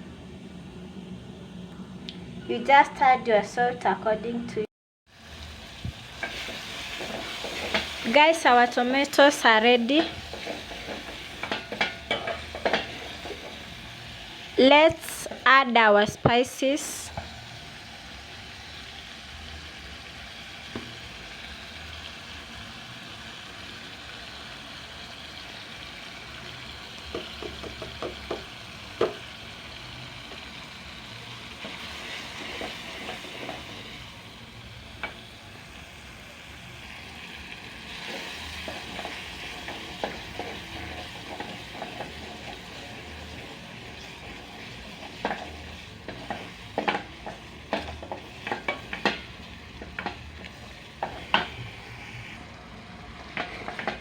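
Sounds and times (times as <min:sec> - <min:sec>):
spices sizzling in a pan: 0:05.1 - 0:54.0
spoon scraping a pan: 0:06.2 - 0:09.2, 0:09.8 - 0:13.8, 0:31.6 - 0:33.8, 0:38.0 - 0:52.4, 0:53.3 - 0:54.0.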